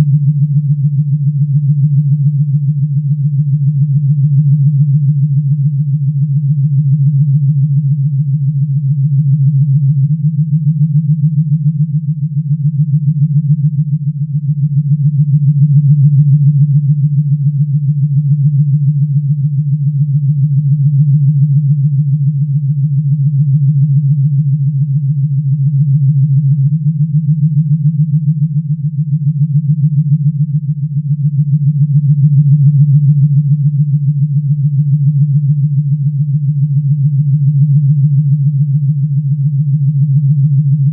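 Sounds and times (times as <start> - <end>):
synthesized hum with flutter: 0.0 - 40.9.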